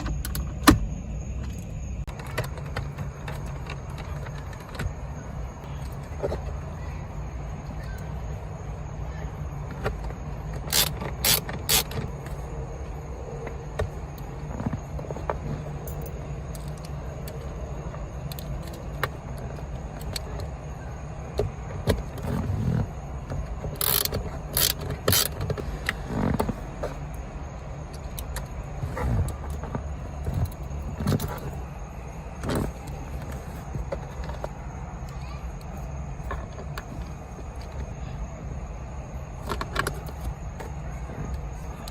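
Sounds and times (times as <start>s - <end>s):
clicks and knocks of parts: 9.6s - 12.4s, 21.3s - 27.2s, 39.4s - 41.9s.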